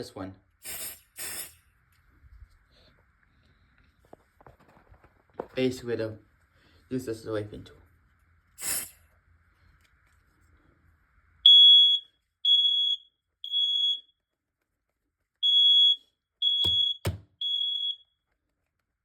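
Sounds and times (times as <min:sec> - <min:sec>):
smoke alarm beeping: 0:11.4 - 0:14.2, 0:15.4 - 0:18.2.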